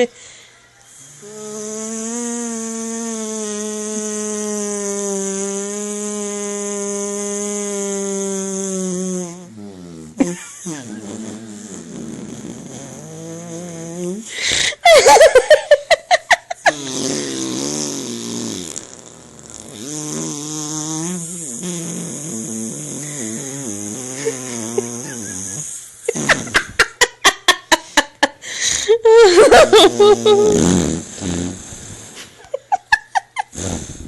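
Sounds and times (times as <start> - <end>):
fart sounds: 1.2 - 14.3, 16.6 - 26.9, 29.2 - 34.0.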